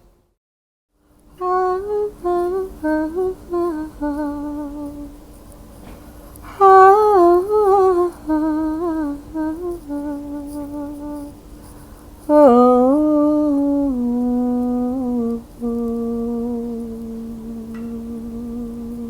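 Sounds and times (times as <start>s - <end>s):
woman humming a slow melody: 1.4s - 5.2s, 6.5s - 11.4s, 12.3s - 19.0s
steady held low note: 12.2s - 19.0s.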